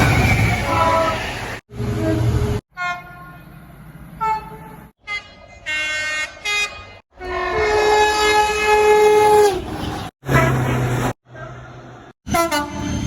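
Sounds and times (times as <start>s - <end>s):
train horn chords: 5.7s - 9.7s, 12.3s - 12.9s.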